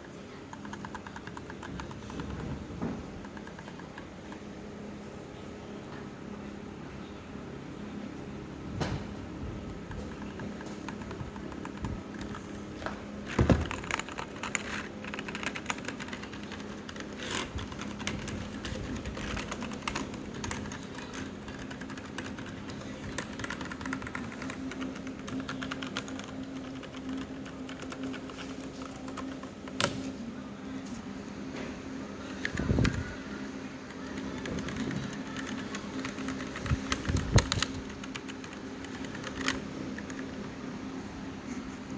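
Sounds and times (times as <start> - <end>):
mechanical keyboard typing: 0.0 - 2.5, 3.1 - 4.5, 9.8 - 30.0, 33.8 - 40.5.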